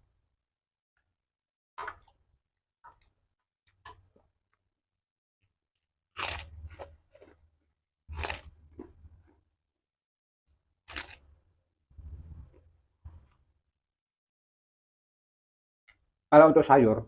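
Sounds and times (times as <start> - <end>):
crunchy bites: 6.1 - 7.5, 8.1 - 9.4, 10.9 - 11.3
chewing: 8.1 - 9.4.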